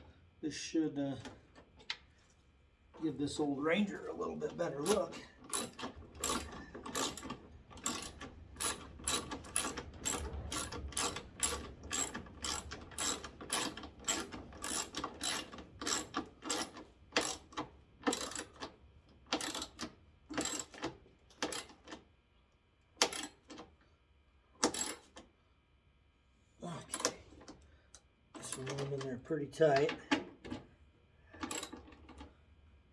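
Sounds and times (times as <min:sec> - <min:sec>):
hand ratchet clicking: 0:04.8 - 0:18.7.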